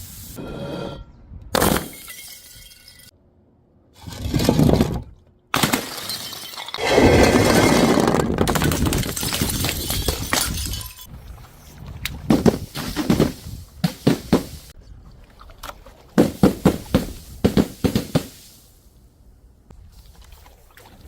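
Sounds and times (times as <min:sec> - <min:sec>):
glass bottles shattering: 0:01.6 - 0:03.1, 0:05.6 - 0:11.1.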